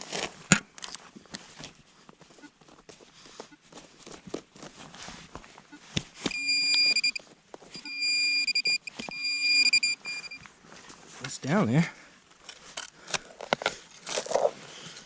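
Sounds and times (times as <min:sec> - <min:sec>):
metal detector beep: 0:06.3 - 0:10.4
digging in wet soil: 0:12.6 - 0:15.0.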